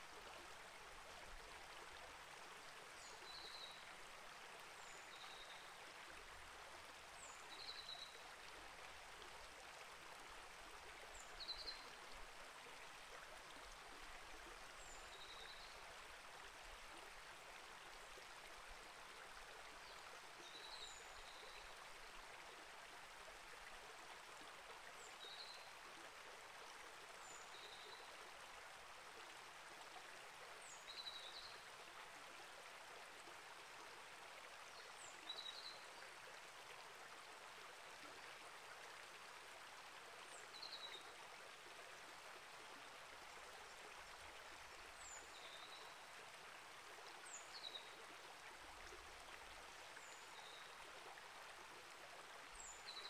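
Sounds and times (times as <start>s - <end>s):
creek water rushing: 0.0s - 53.0s.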